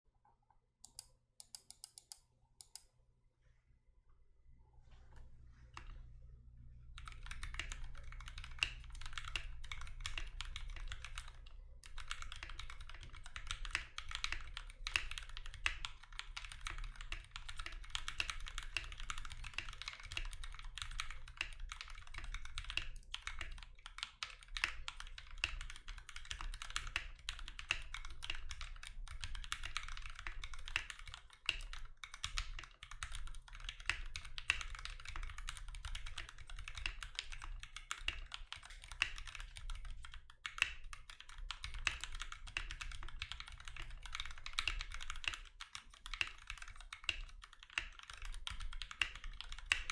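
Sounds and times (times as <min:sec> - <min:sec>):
mechanical keyboard typing: 0:00.8 - 0:02.8, 0:06.9 - 0:49.9.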